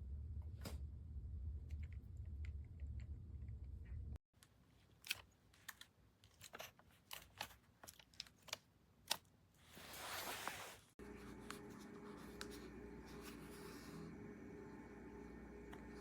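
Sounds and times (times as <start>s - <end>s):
steady low hum: 11.0s - 16.0s.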